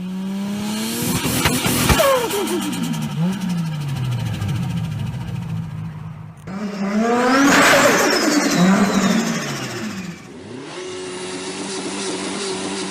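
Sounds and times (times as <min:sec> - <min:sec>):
turbocharged car engines revving: 0:00.0 - 0:12.9
high falling turbo whistle: 0:06.5 - 0:10.4.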